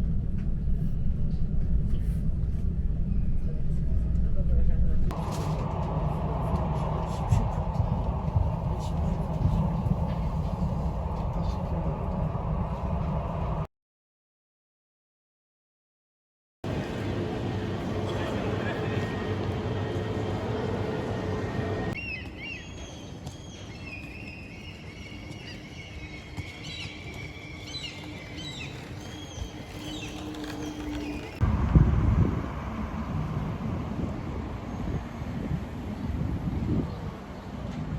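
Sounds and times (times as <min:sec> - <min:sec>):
train rumbling on rails: 0:00.0 - 0:13.7, 0:16.6 - 0:37.9
rushing noise: 0:05.1 - 0:13.7
birds chirping and singing: 0:22.0 - 0:31.4.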